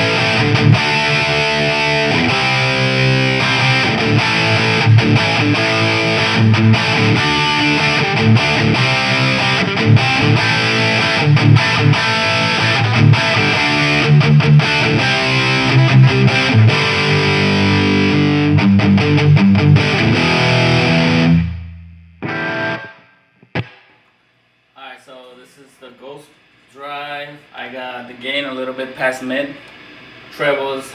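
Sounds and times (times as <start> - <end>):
distorted electric guitar riffing: 0.0 - 24.0
short guitar hit: 2.2 - 24.0.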